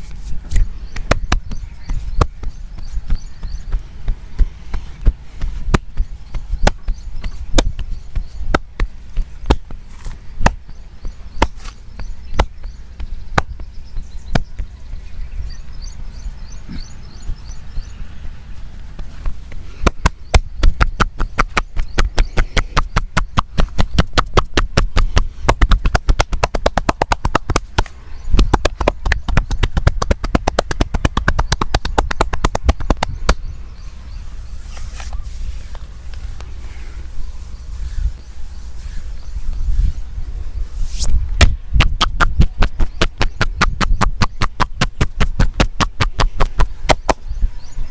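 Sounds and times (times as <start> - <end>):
hands slapping on body: 0.0 - 14.7, 18.9 - 33.5, 41.0 - 47.2.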